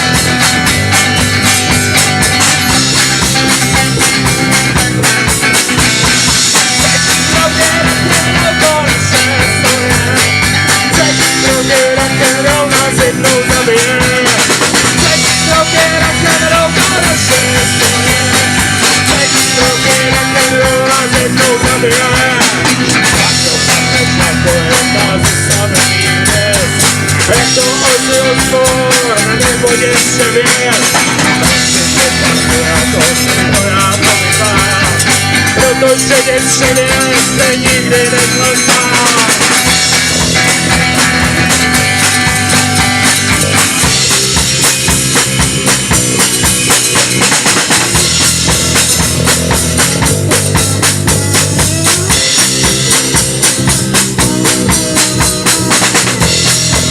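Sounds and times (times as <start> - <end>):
drum beat: 0.0 - 56.9
strummed guitars: 0.0 - 56.9
person singing: 6.0 - 44.4.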